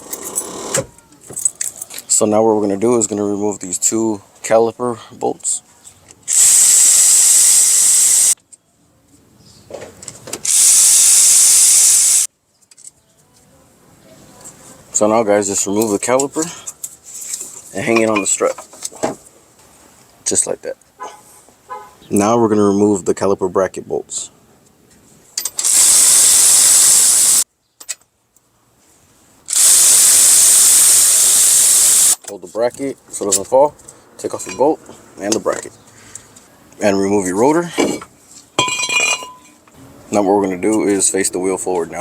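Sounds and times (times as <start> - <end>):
cordless power tool running: 6.3 - 8.4, 10.5 - 12.3, 25.7 - 27.4, 29.5 - 32.2.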